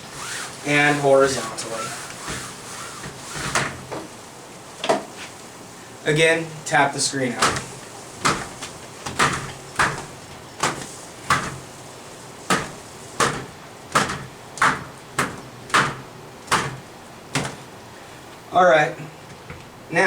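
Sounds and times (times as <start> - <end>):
towel smacking wet window screen: 0.0 - 4.2, 7.3 - 17.7.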